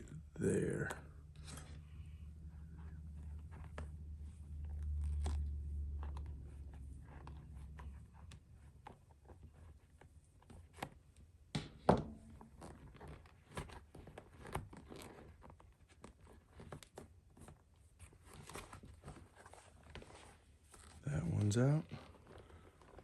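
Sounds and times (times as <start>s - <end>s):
leather lace pulled through holes: 2.5s - 8.3s, 12.2s - 17.6s
leather scraping and clicking: 2.5s - 11.1s, 12.2s - 23.0s.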